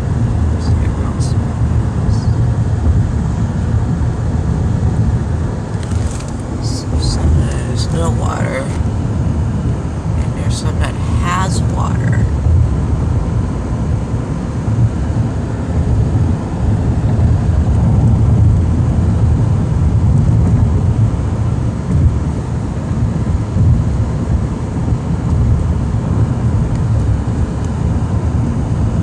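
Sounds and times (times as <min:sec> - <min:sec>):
road and wind noise in car: 0:00.0 - 0:29.0.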